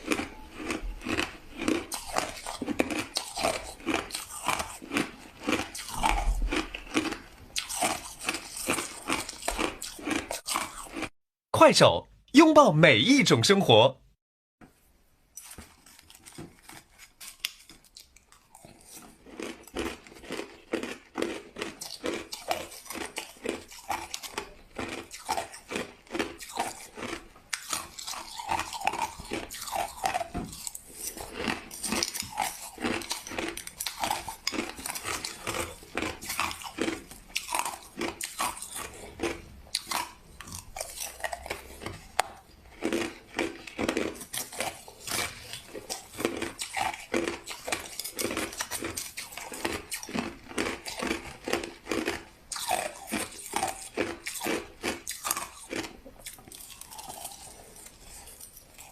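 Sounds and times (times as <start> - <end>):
crushed ice being chewed: 0.0 - 11.2, 15.4 - 58.9.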